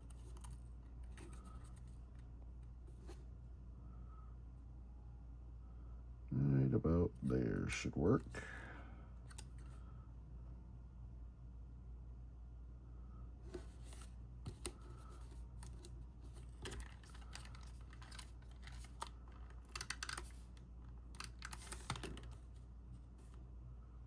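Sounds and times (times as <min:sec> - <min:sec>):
paper rustling: 0:00.0 - 0:02.2, 0:13.5 - 0:23.4.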